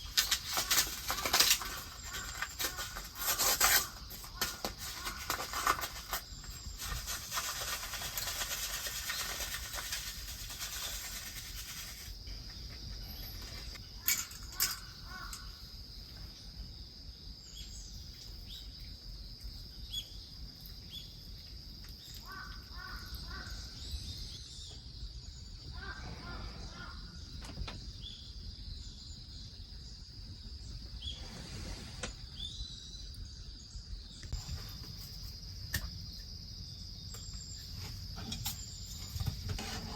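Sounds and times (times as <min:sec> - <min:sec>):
crickets trilling: 0:00.0 - 0:39.9
crows cawing: 0:14.6 - 0:15.6, 0:22.2 - 0:23.7, 0:25.8 - 0:27.2.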